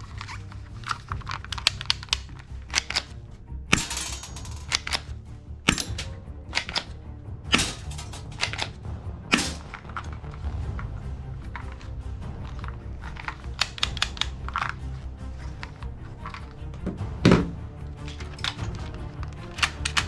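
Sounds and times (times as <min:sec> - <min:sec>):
background music: 0:00.0 - 0:20.0
toy guns firing: 0:03.7 - 0:05.1, 0:05.7 - 0:06.9, 0:07.5 - 0:08.7, 0:09.3 - 0:09.9, 0:19.6 - 0:20.0.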